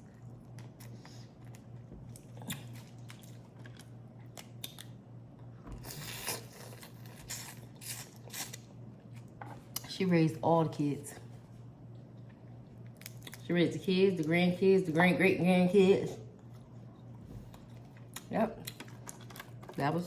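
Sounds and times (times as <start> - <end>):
wet squishing and chewing: 0.0 - 9.9, 11.7 - 13.5, 16.3 - 19.8.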